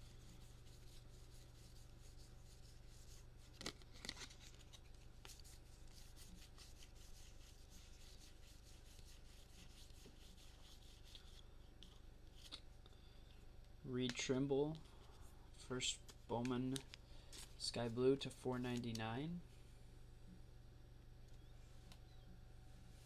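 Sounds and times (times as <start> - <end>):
trading cards rubbing and sliding: 0.0 - 12.6
low steady hum: 0.0 - 23.0.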